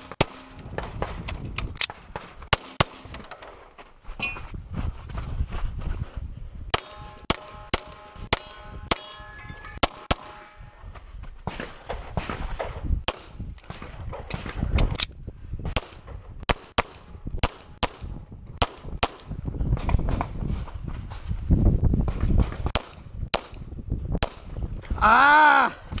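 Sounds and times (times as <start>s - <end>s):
pistol shots: 0.0s - 1.2s, 1.8s - 3.1s, 6.7s - 9.2s
steel targets ringing: 6.8s - 10.6s.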